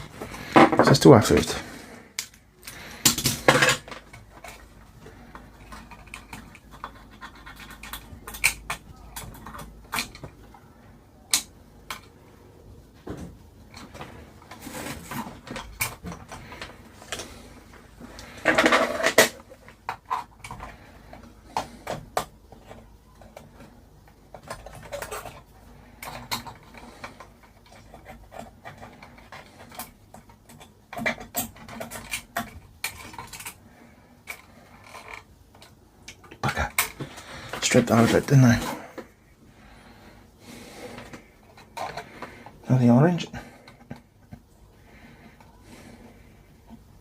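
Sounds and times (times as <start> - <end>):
tools and parts clicking: 0.0 - 10.6, 11.3 - 12.2, 18.2 - 38.2
parts clattering: 0.0 - 12.2, 12.9 - 47.0.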